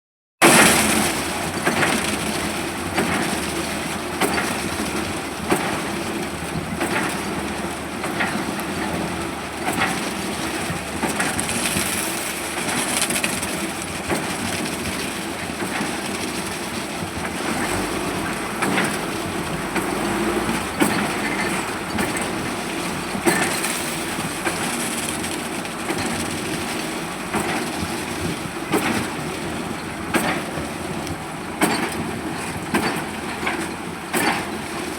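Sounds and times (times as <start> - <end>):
concrete pouring machinery running: 0.4 - 34.9
knocks and clattering: 17.1 - 29.2, 31.6 - 34.6.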